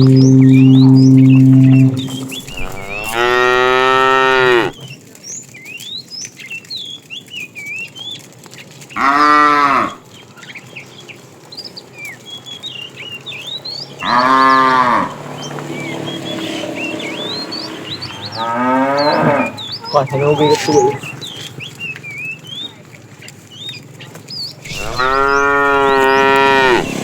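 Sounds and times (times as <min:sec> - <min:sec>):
quiet chirping: 0:00.0 - 0:04.7
cows mooing: 0:00.0 - 0:04.8, 0:09.0 - 0:10.0, 0:14.0 - 0:21.2, 0:24.7 - 0:27.0.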